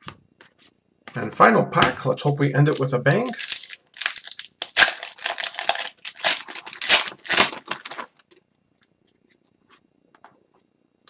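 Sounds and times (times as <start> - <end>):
foil wrapper crinkling and tearing: 2.7 - 8.4.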